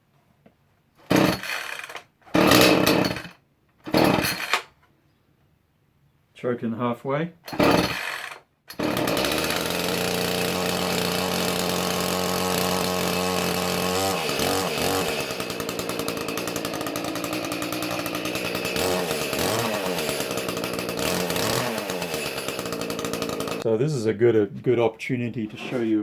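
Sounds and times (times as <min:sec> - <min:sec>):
chainsaw idling: 0:01.1 - 0:03.3, 0:03.9 - 0:04.5, 0:07.5 - 0:23.7.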